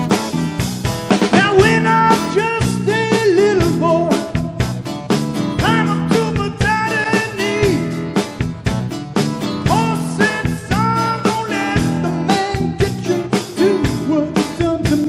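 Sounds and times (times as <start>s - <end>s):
rock band playing: 0.0s - 15.0s
lead singer singing: 1.3s - 4.6s, 5.6s - 8.2s, 9.6s - 15.0s.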